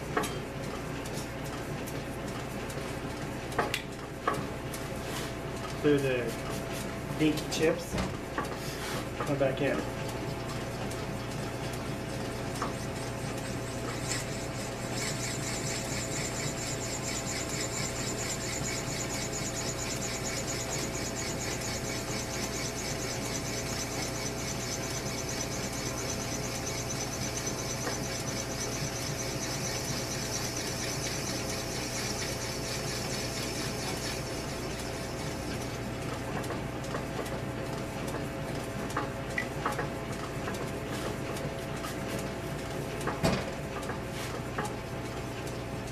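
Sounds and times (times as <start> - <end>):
motor hum: 0.0 - 37.9
drill cutting metal on lathe: 12.7 - 35.7.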